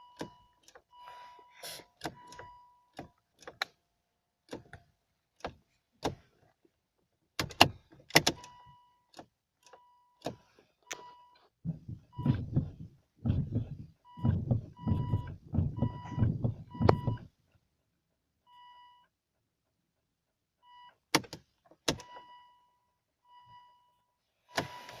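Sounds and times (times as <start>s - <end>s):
electronic warning beeps: 14.1s - 17.2s.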